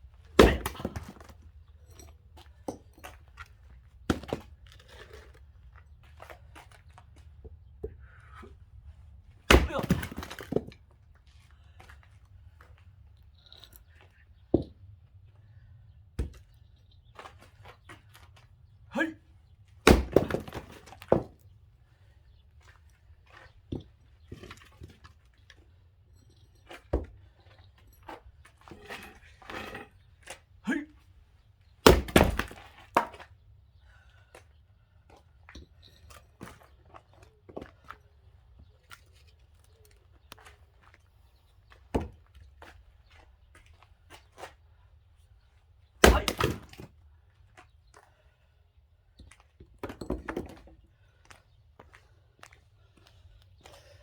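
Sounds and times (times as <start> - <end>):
wood cracking and splintering: 0.3 - 1.4, 9.5 - 10.7, 19.8 - 21.4, 31.8 - 33.2, 46.0 - 46.9
axe splitting wood: 0.3 - 1.5, 4.1 - 5.4, 9.5 - 10.7, 19.8 - 21.4, 28.6 - 30.4, 31.8 - 33.3, 46.0 - 46.9.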